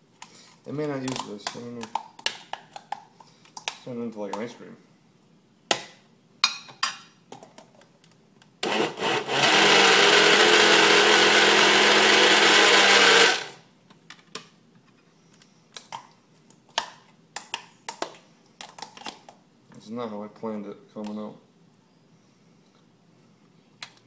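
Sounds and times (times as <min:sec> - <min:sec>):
blender running: 0:08.6 - 0:13.6.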